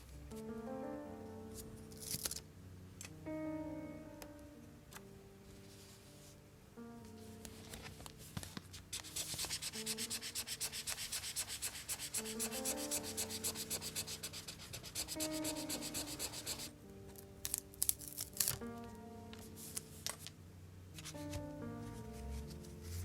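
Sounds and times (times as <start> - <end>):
soft piano music: 0.0 - 23.0
rubbing on paper: 8.8 - 16.7.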